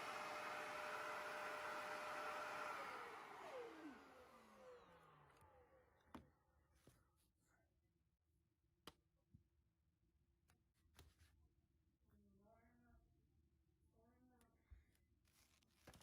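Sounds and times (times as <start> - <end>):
vacuum cleaner motor spinning down: 0.0 - 6.2.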